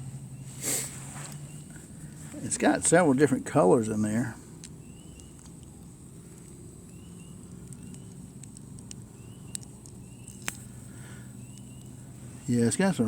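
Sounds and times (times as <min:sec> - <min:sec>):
campfire coals crackling: 0:00.0 - 0:12.7
low steady rumble: 0:00.0 - 0:13.0
faint high chirp: 0:01.4 - 0:01.8, 0:04.8 - 0:05.4, 0:06.9 - 0:08.2, 0:09.1 - 0:10.4, 0:11.1 - 0:12.0.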